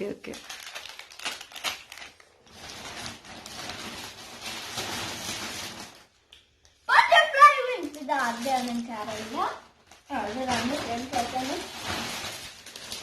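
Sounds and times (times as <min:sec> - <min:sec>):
packaging crackling: 0:00.2 - 0:06.3, 0:07.1 - 0:13.0
packaging rustling: 0:00.2 - 0:06.3, 0:07.1 - 0:13.0.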